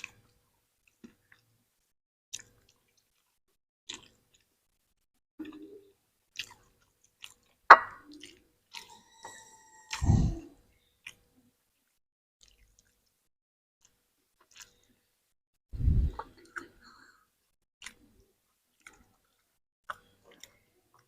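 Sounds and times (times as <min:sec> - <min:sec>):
cat chewing food: 0:06.3 - 0:08.9, 0:11.0 - 0:15.0.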